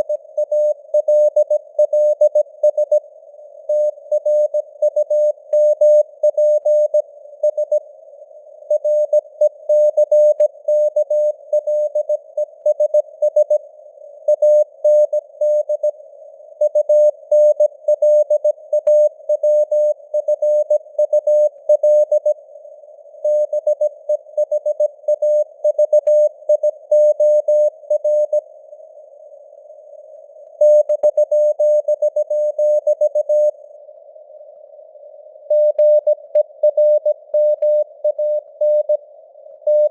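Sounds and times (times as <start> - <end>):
morse code beeps: 3.7 - 7.8, 35.5 - 39.0.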